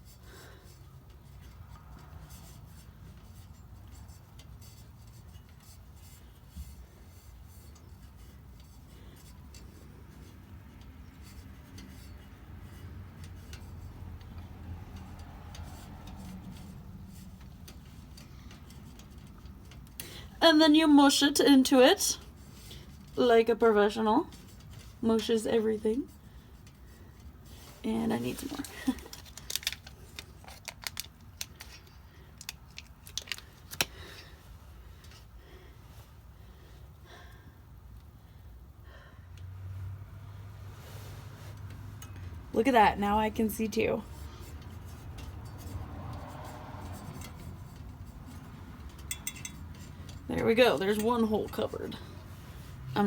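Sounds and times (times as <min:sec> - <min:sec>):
putty wrapper clicks and crinkles: 0:29.0 - 0:33.9.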